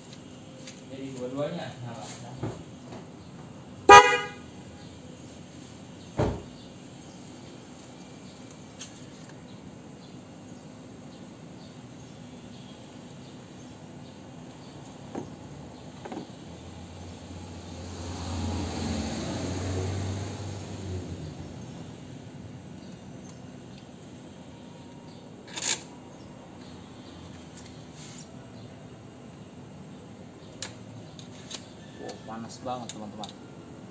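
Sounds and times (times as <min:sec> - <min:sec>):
two-tone horn toot: 0:03.9 - 0:04.5
thump: 0:06.2 - 0:06.5.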